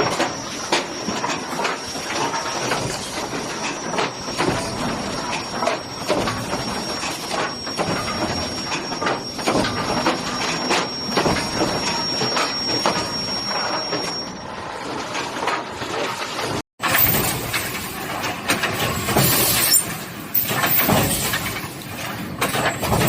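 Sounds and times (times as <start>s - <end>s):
steady machine noise: 0.0s - 23.0s
thin high whine: 5.5s - 15.3s
nailing machine clatter: 16.8s - 23.0s.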